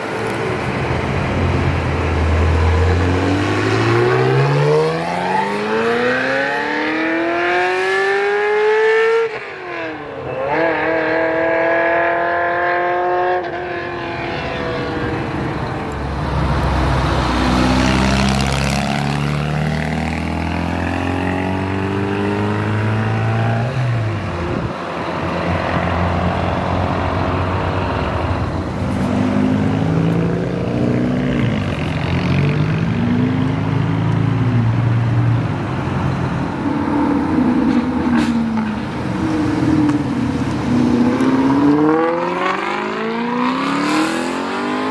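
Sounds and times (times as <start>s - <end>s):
cars pulling away: 0.0s - 44.9s
road rumble: 0.0s - 44.9s
sports car engine accelerating: 1.7s - 24.3s.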